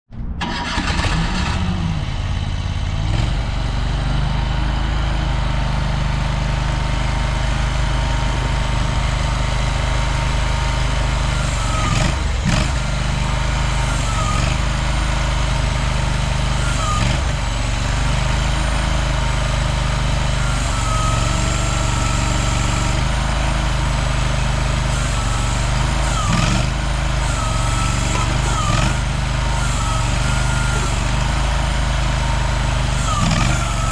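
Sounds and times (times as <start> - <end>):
mini excavator engine idling: 0.4 - 33.9
short whining tones: 7.6 - 33.9.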